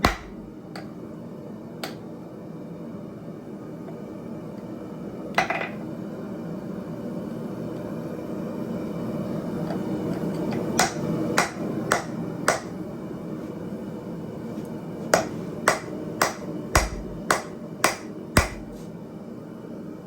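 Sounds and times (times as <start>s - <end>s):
hammer striking metal on anvil: 0.0s - 0.4s, 10.8s - 12.7s, 15.2s - 18.8s.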